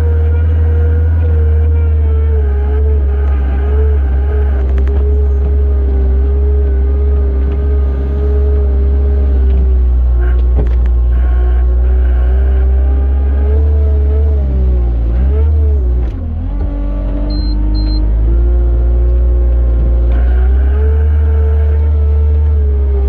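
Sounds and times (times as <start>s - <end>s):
tractor engine under load: 0.0s - 23.0s
short high beeps: 17.3s - 18.0s.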